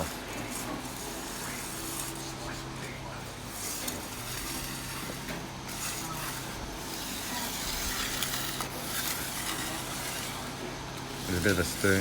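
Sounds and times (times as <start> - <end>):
tools scraping wet concrete: 3.5 - 12.0.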